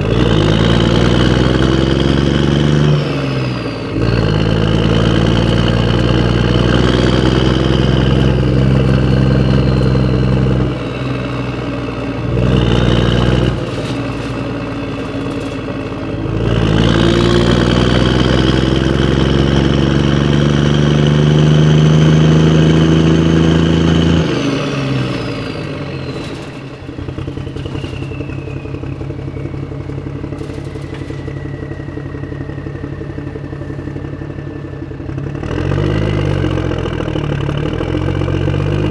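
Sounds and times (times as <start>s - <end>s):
rising engine whine: 0.0s - 38.9s
vehicle engine revving: 0.0s - 38.9s.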